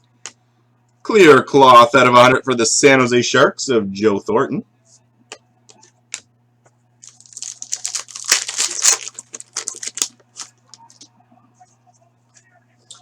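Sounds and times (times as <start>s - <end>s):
faint low hum: 0.0s - 13.0s
foil wrapper crinkling and tearing: 7.0s - 11.0s.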